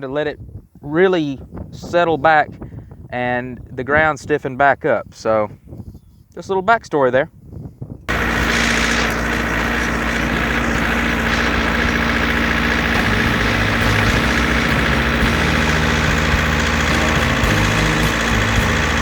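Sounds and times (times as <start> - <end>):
tractor engine running: 8.1 - 19.0.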